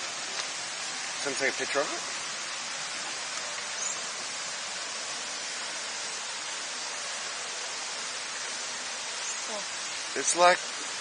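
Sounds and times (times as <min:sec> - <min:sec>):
outdoor background hiss: 0:00.0 - 0:11.0
faint high chirp: 0:03.7 - 0:04.0, 0:09.2 - 0:09.6.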